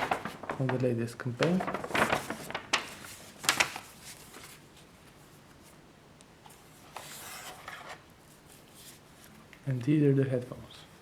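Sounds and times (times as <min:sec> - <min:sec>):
paper packaging rustling: 0:00.0 - 0:04.9.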